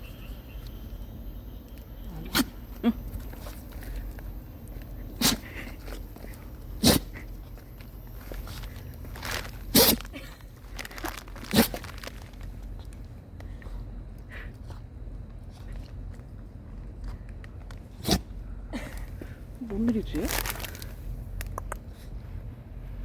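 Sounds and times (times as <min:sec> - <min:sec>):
dog sneezing: 0:02.3 - 0:03.5, 0:05.0 - 0:06.0, 0:06.8 - 0:07.3, 0:09.7 - 0:10.2, 0:11.5 - 0:11.8, 0:18.0 - 0:18.3.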